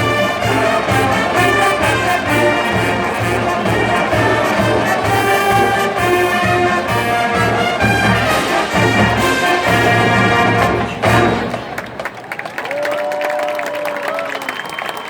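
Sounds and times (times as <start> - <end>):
brass sustaining chords: 0.0 - 12.0.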